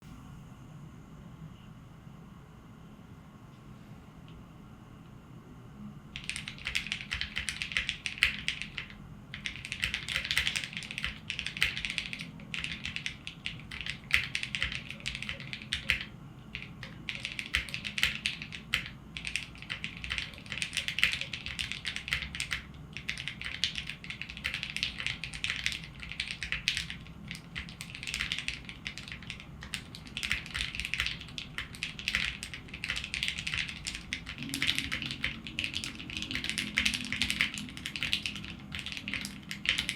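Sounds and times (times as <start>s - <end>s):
mechanical keyboard typing: 6.2s - 39.9s.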